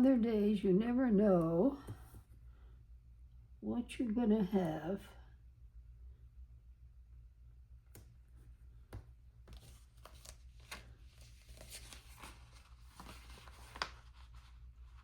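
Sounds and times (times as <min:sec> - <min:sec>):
rustling of paper sheets: 0:09.4 - 0:15.0.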